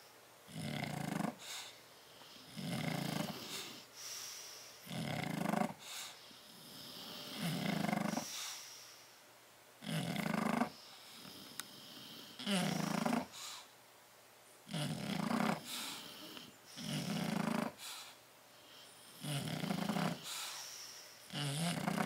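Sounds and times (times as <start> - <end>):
dog snoring: 0.5 - 3.9, 4.8 - 8.6, 9.8 - 13.6, 14.7 - 22.0.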